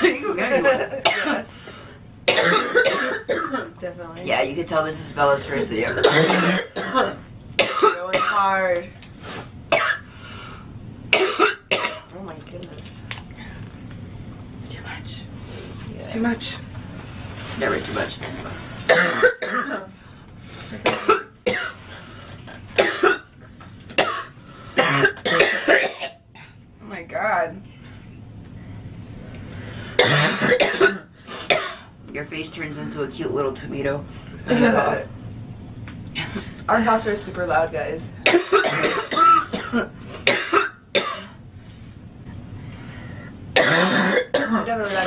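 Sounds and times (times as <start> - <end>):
women coughing hard: 0.6 - 1.5, 2.3 - 3.8, 6.0 - 8.6, 9.7 - 10.1, 11.1 - 12.1, 18.9 - 19.9, 20.7 - 21.8, 22.8 - 23.3, 24.0 - 26.6, 30.0 - 31.9, 38.2 - 41.4, 43.6 - 45.0.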